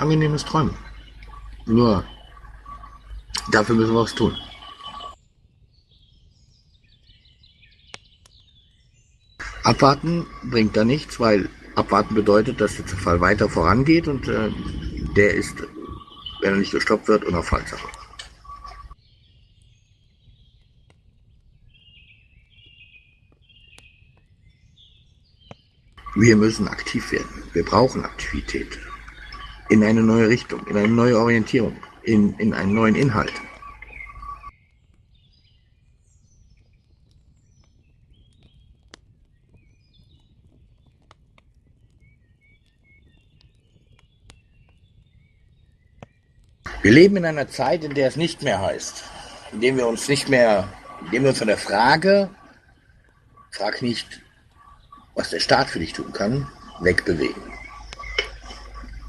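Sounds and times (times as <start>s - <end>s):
birds chirping: 0.0s - 59.0s
sharp clicks: 17.8s - 19.0s.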